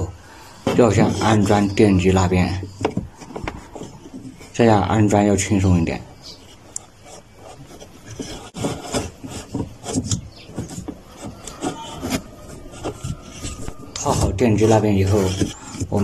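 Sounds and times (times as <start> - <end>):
rubber belt rubbing and scraping: 0.0 - 16.0.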